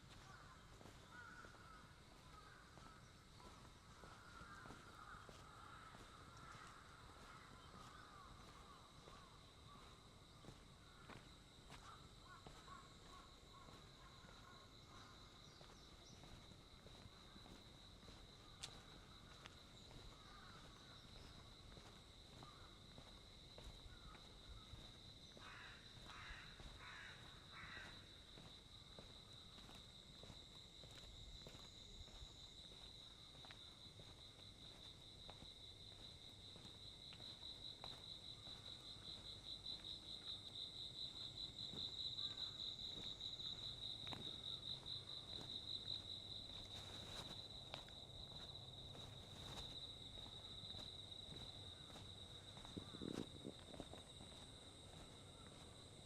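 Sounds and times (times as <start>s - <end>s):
crow cawing: 0.1s - 10.0s, 10.9s - 15.6s, 19.4s - 21.3s, 22.4s - 22.8s, 23.9s - 28.2s.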